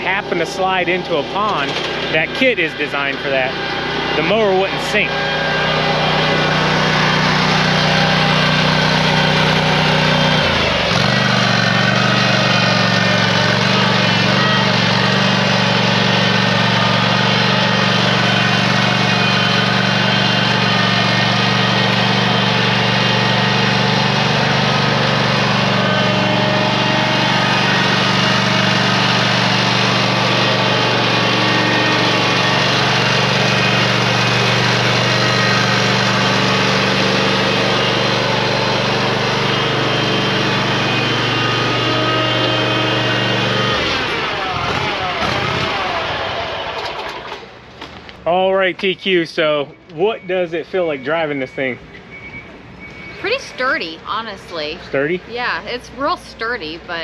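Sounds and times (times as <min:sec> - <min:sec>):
riding lawn mower engine: 0:00.0 - 0:57.0.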